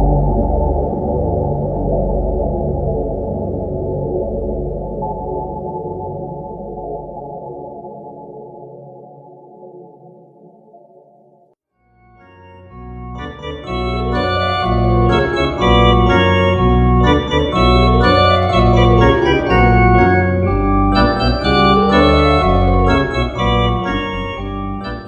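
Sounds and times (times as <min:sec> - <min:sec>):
organ keyboard music: 0:12.2 - 0:25.0.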